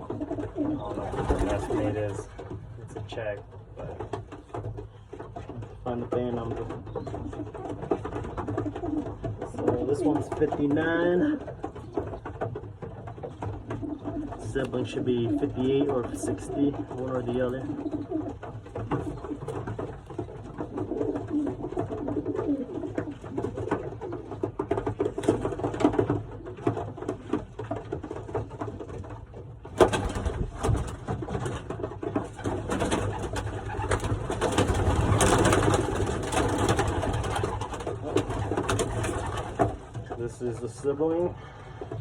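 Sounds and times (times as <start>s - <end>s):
pigeons cooing: 0.0s - 42.0s
loud rustling noise: 18.2s - 41.0s.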